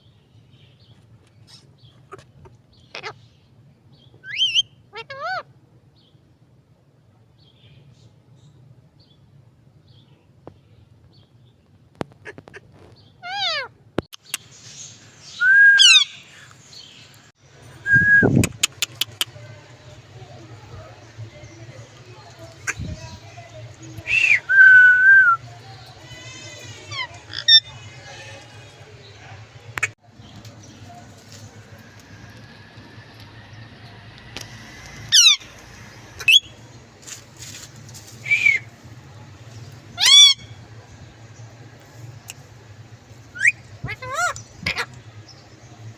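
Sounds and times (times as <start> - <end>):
parakeet calling: 4.2 - 5.5, 13.2 - 14.5, 15.3 - 16.4, 25.9 - 30.0, 35.0 - 35.6, 36.2 - 36.6, 40.0 - 40.5, 43.3 - 45.0
sharp clicks: 18.4 - 19.3.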